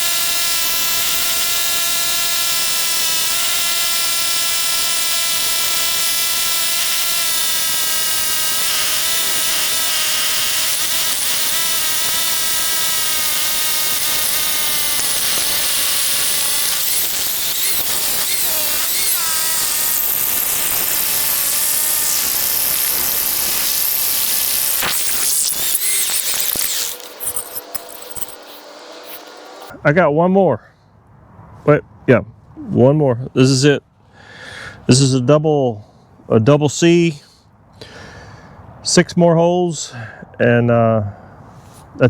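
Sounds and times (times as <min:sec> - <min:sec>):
hammer drill whining: 0:00.0 - 0:29.7.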